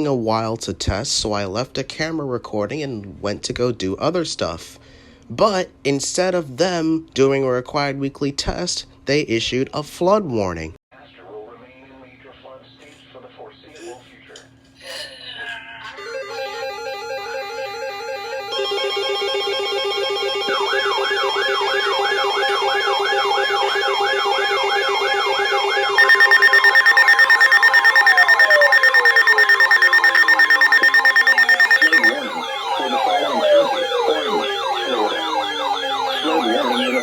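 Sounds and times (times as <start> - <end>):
steady electronic alarm tones: 16.4 - 37.0
falling siren sweeps: 18.2 - 37.0
warbling siren tone: 18.5 - 37.0
pulsing electronic tones: 18.6 - 37.0.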